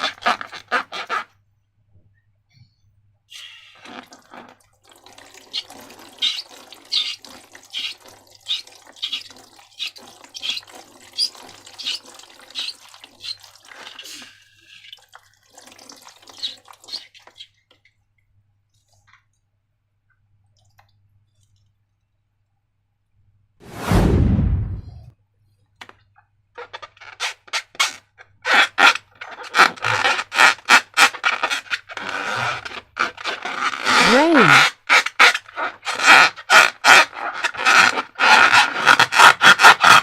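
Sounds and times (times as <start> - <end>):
slime squelching: 5.5 - 12.0, 31.1 - 34.6.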